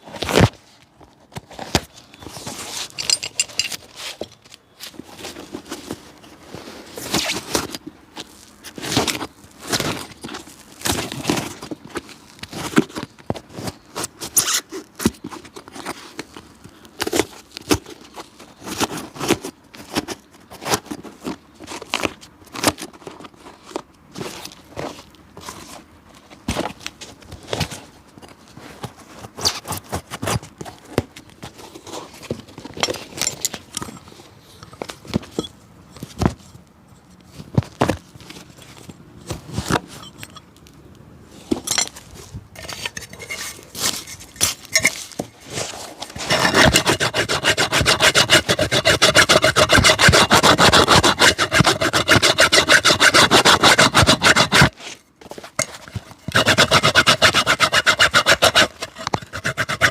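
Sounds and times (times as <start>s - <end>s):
tools scraping and tapping shoe sole: 1.6s - 5.0s, 39.6s - 40.7s, 41.5s - 59.9s
rasp rubbing over sole: 45.6s - 55.0s, 55.9s - 59.9s.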